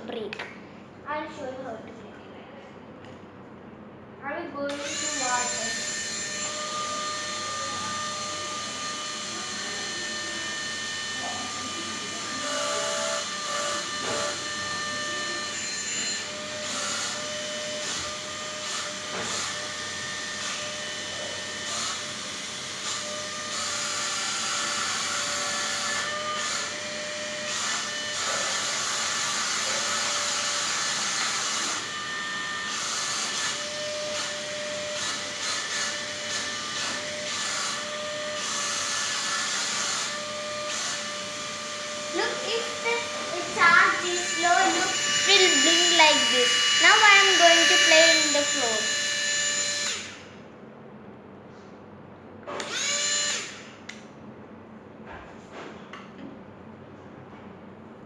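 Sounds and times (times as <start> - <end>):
suction fan whine: 4.2 - 50.5, 52.4 - 54.0.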